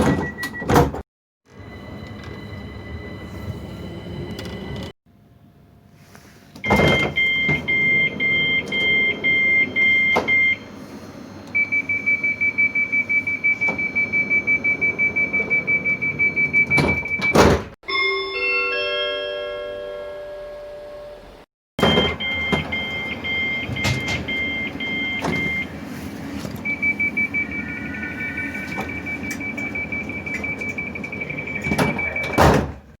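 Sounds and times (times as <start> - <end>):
two-tone door warning beeps: 0.0 - 4.9, 6.6 - 10.8, 11.5 - 17.8, 21.8 - 32.8
train doors shutting thud: 21.8 - 26.9, 28.6 - 32.9
electronic tones falling in pitch: 26.6 - 32.2.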